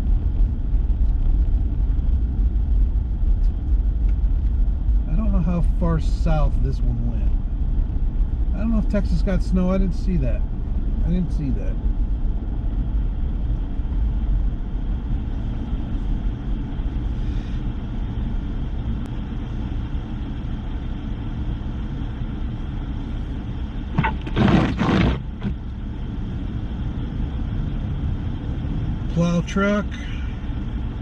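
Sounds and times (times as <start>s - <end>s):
vehicle engine rumble: 0.0s - 31.0s
loud rush of noise: 23.9s - 25.6s
tyres on slushy road: 23.9s - 25.7s.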